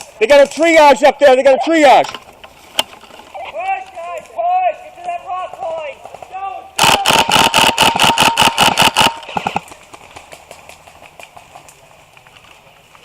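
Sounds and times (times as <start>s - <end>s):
airsoft rifle rapid firing: 6.8s - 9.6s.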